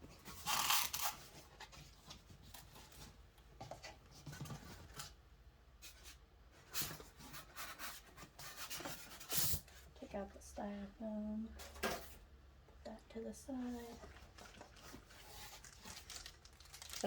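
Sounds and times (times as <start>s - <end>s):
cardboard and styrofoam rustling: 13.6s - 17.0s.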